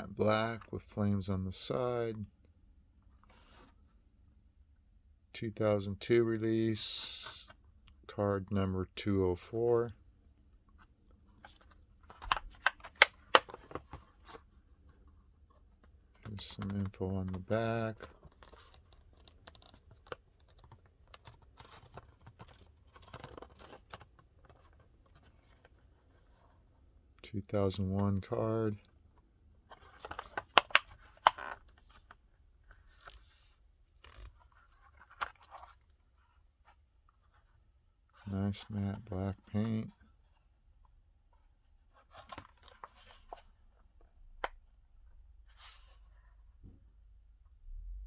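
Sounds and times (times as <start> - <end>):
plastic blister card crackling: 12.2 - 13.8
rustling packaging: 15.8 - 26.4.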